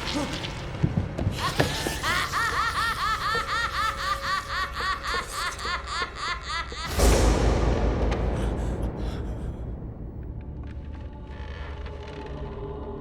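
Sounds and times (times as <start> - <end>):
high-pitched cackling laugh: 1.4 - 6.9
low boom: 6.9 - 11.1.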